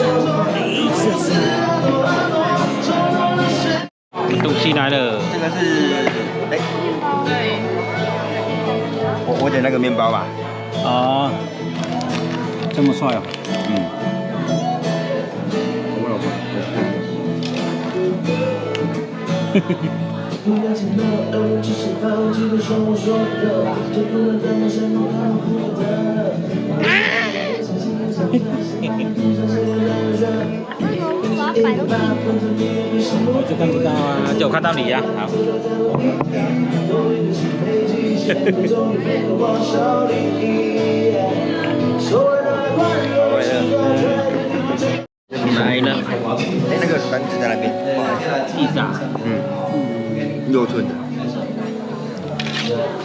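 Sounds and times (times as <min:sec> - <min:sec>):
person singing: 0:00.0 - 0:04.5, 0:17.7 - 0:45.5
acoustic guitar playing: 0:00.0 - 0:53.0.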